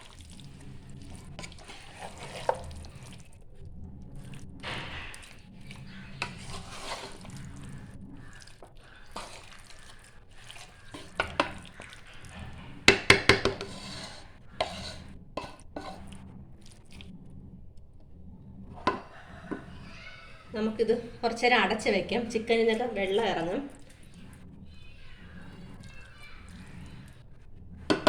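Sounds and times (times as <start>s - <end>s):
spoon stirring in a pot: 0.0s - 28.0s
spoon knocking against pot: 12.9s - 15.9s, 18.8s - 19.7s.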